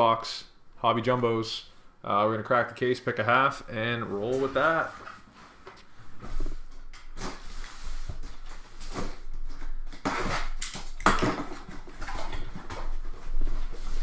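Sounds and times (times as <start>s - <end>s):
cardboard boxes scraping and rustling: 4.6s - 10.6s, 11.6s - 14.0s.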